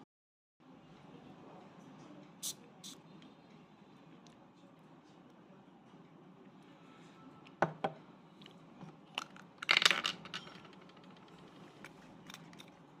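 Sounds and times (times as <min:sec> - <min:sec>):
small objects rattling: 0:09.2 - 0:11.4.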